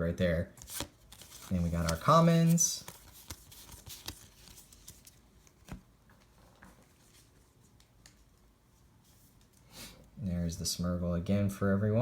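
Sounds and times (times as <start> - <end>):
trading cards rustling: 0.6 - 8.2.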